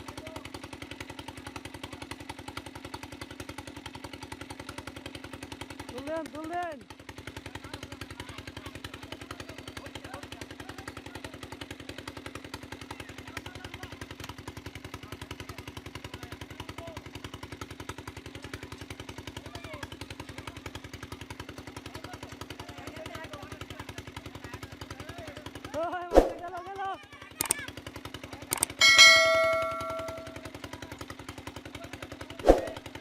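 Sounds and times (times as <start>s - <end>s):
pump engine knocking: 0.0s - 25.8s, 26.5s - 33.0s.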